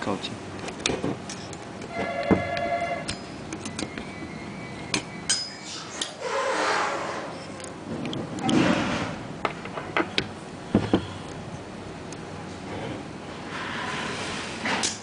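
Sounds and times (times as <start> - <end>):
metal part clinking and ringing: 5.3 - 5.7
metal scraping and sliding: 5.6 - 7.6, 12.7 - 15.0.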